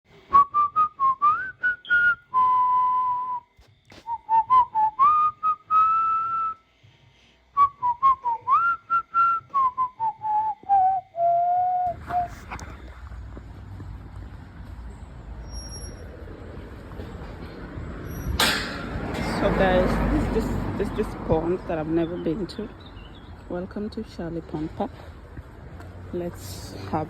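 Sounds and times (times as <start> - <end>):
whistled melody: 0.3 - 6.7, 7.6 - 12.5
traffic hum: 3.8 - 27.0
sharp percussive hits: 18.3 - 19.5.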